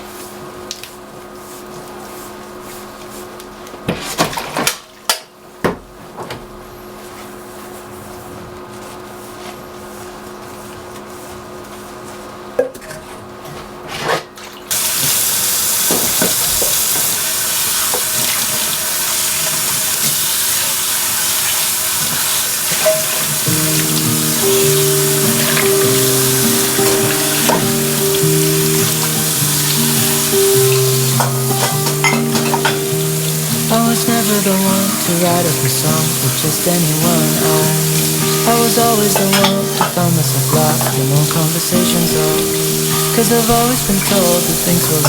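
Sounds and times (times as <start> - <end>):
tap water running into sink: 14.7 - 45.0
background music: 23.4 - 45.0.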